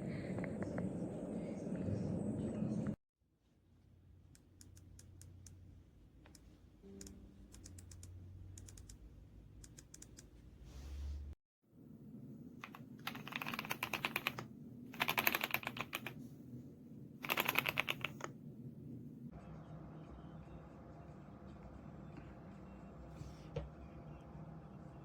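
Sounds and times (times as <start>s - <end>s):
mechanical keyboard typing: 12.6s - 16.2s, 17.2s - 18.3s.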